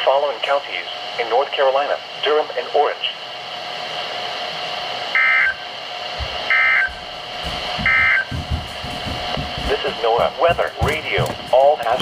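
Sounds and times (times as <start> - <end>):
radio static: 0.0 - 3.2, 9.3 - 12.0
faint low rumbling: 6.0 - 12.0.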